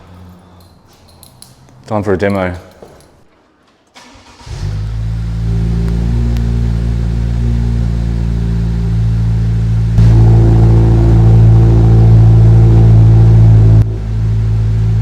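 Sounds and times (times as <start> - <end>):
car engine starting and idling: 4.0 - 15.0.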